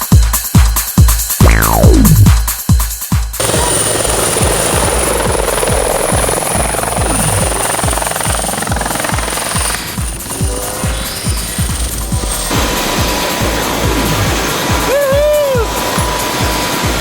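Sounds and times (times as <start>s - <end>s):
electronic music beat: 1.4s - 2.5s
helicopter rotor and engine noise: 3.4s - 17.0s
high turbine whine: 3.4s - 17.0s.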